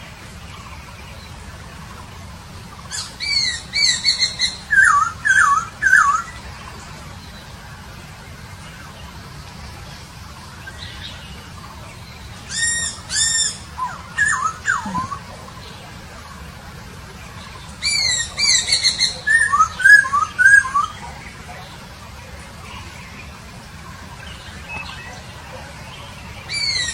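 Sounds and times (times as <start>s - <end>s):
songbird whistled song: 2.7s - 7.6s, 10.5s - 15.9s, 17.2s - 21.8s, 22.6s - 26.9s.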